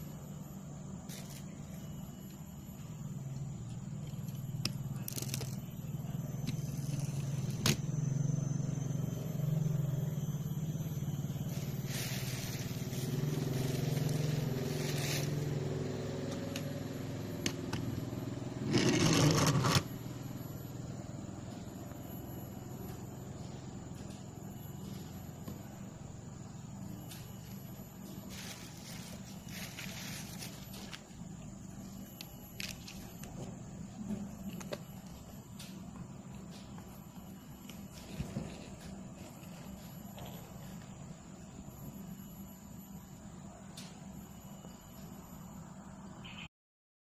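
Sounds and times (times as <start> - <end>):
small electric motors humming: 0.0 - 45.6
loud scraping: 18.6 - 19.9.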